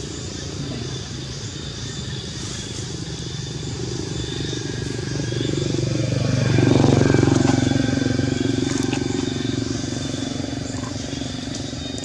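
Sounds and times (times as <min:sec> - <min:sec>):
motorbike engine passing: 0:03.0 - 0:12.0.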